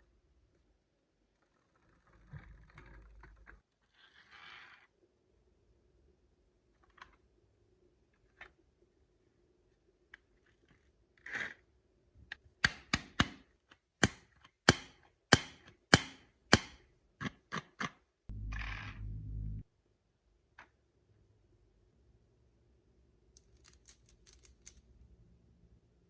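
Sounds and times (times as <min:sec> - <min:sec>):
steady electric buzz: 0:18.3 - 0:19.6.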